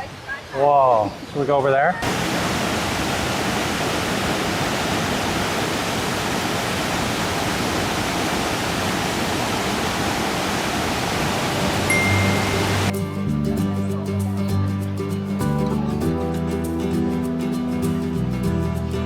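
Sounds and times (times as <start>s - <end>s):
waterfall rushing: 2.0s - 13.2s
background music: 11.9s - 19.0s.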